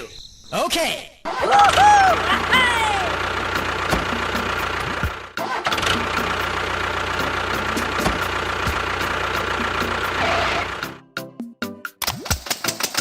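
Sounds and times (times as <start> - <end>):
vehicle engine running: 1.4 - 11.0.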